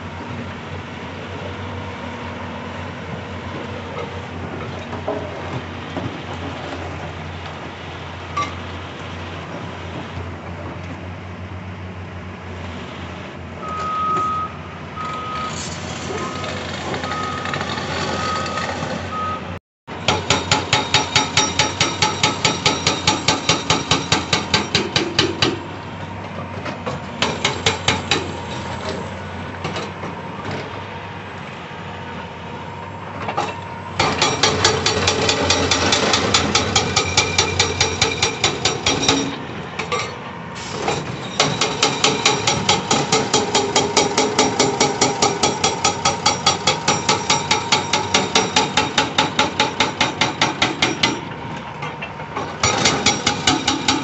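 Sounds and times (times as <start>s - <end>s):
excavator engine running: 0.0s - 54.0s
backup alarm beeps: 13.6s - 15.6s, 18.2s - 19.5s
hydraulic breaker hammering rock: 20.0s - 25.7s, 26.9s - 28.4s, 34.0s - 39.5s, 40.8s - 51.4s, 52.4s - 54.0s.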